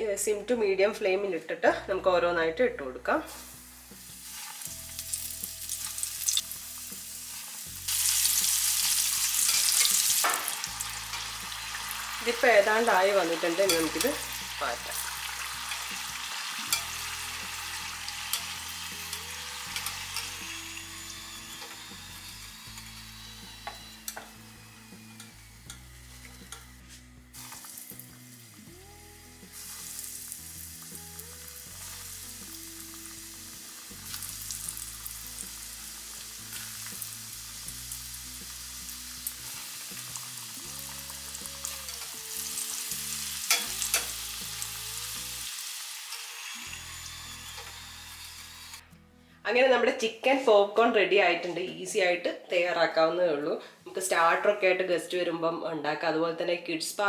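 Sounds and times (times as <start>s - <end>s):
soft background music: 0.0s - 57.0s
food sizzling in hot oil: 3.3s - 48.8s.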